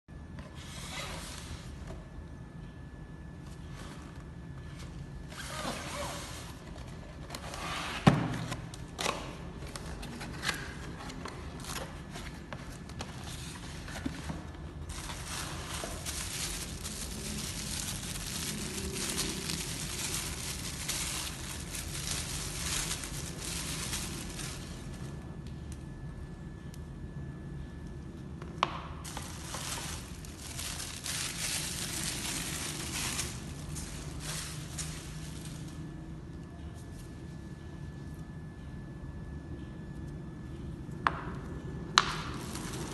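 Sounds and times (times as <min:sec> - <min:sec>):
crinkling and rustling: 0:03.4 - 0:25.8, 0:29.0 - 0:37.2, 0:42.2 - 0:42.9.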